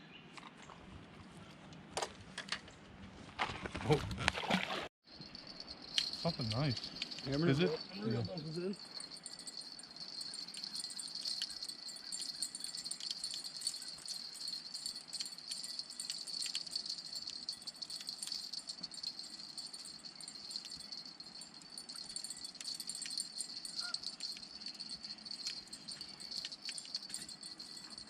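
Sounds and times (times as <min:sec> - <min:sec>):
high-pitched insect trill: 0:05.1 - 0:28.0
faint clicks and rattles: 0:08.7 - 0:28.0.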